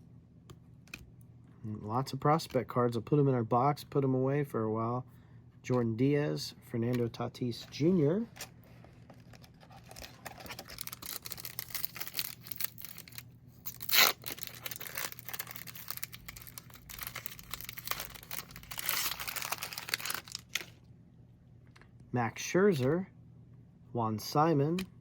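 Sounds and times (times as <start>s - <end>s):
wrapper crinkling: 8.3s - 20.8s
wrapper tearing: 9.2s - 20.8s.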